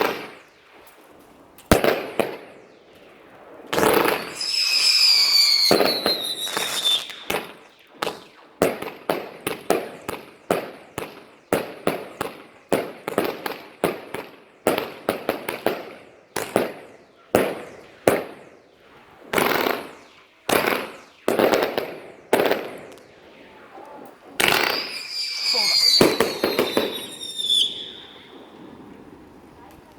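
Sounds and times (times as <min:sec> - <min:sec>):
fireworks bangs: 0:01.7 - 0:29.9
firework whistle: 0:03.8 - 0:07.8, 0:23.2 - 0:29.1.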